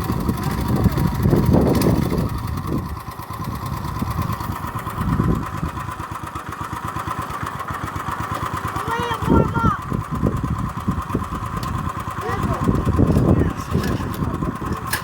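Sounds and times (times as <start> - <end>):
go-kart engine idling and revving: 0.0 - 15.0.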